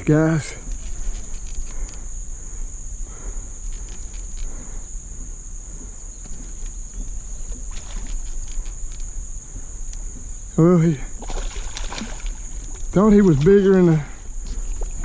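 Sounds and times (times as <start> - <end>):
insects chirring: 0.0 - 15.0
faint clicks: 9.8 - 10.1.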